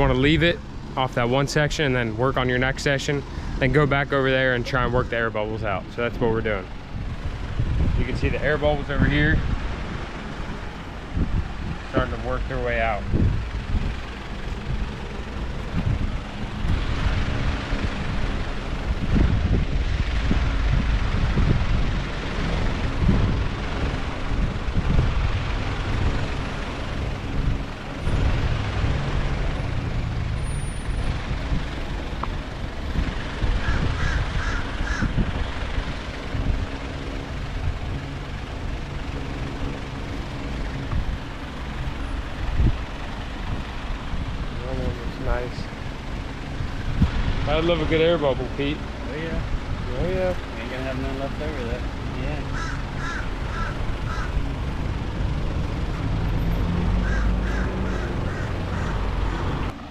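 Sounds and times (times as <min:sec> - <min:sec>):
steady low rumble: 0:00.0 - 0:59.9
bird calling: 0:33.6 - 0:35.2, 0:52.5 - 0:54.4, 0:57.0 - 0:59.6.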